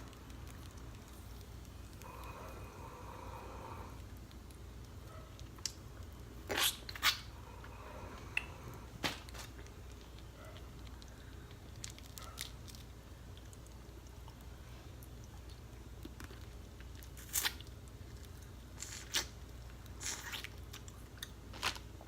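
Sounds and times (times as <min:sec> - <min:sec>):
crab shells cracking: 0:00.0 - 0:02.4
steady low hum: 0:00.0 - 0:20.0
wet chewing: 0:00.0 - 0:22.0.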